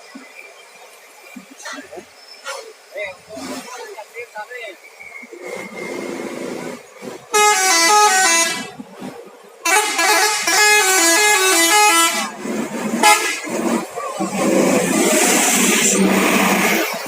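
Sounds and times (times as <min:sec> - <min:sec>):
musical bus horn tune: 0:07.2 - 0:08.8, 0:09.6 - 0:13.8.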